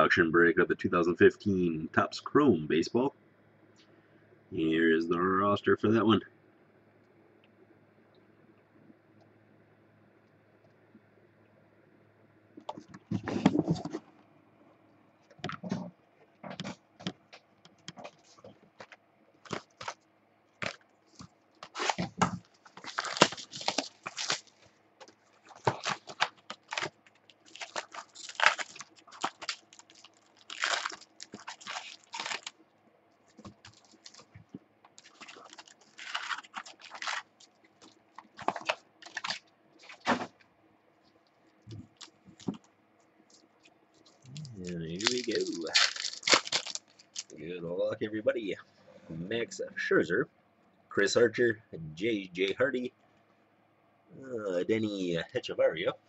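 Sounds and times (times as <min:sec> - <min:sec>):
packaging tearing and crinkling: 0:21.6 - 0:32.6, 0:33.3 - 0:34.4, 0:35.0 - 0:40.2, 0:44.9 - 0:47.4.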